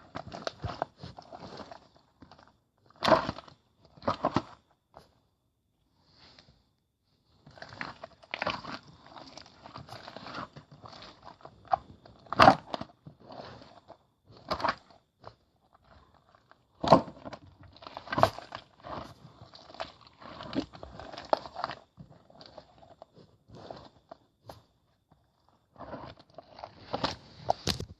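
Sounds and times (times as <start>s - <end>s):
crunching and crackling: 0.0s - 5.2s, 7.4s - 27.9s.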